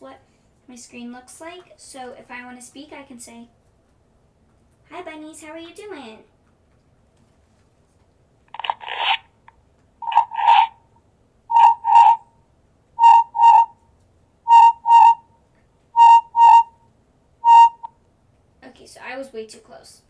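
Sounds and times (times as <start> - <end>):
audio feedback echo loop: 11.5 - 12.2, 13.0 - 13.8, 14.5 - 15.2, 16.0 - 16.8, 17.4 - 17.9
high beeping tones: 11.5 - 12.2, 13.0 - 13.7, 14.5 - 15.2, 16.0 - 16.8, 17.4 - 17.9.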